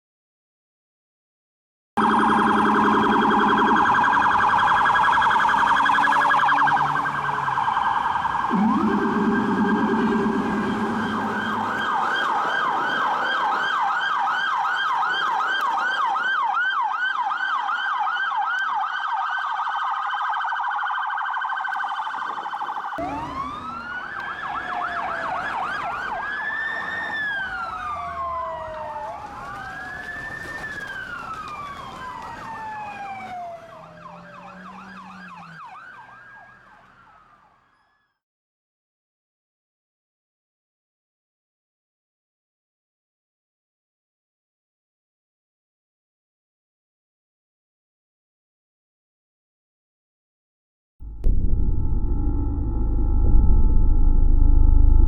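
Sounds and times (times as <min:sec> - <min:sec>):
emergency sirens yelping and wailing: 0:02.0 - 0:38.1.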